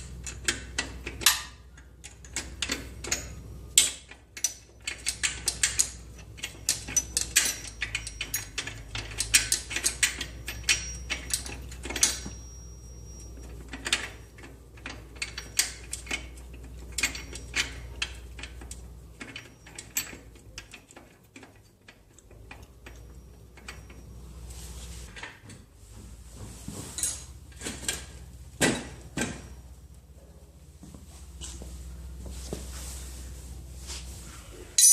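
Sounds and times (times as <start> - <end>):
metal tools clinking and clattering: 4.0 - 24.2, 27.0 - 29.6.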